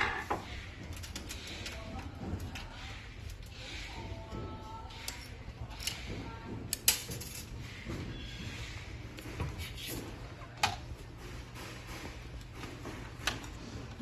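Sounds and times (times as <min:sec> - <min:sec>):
machine parts clicking and knocking: 0:00.0 - 0:07.9.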